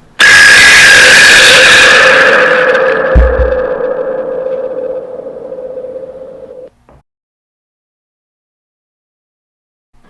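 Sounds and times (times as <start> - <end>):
electronic held tone: 0.2 - 6.7.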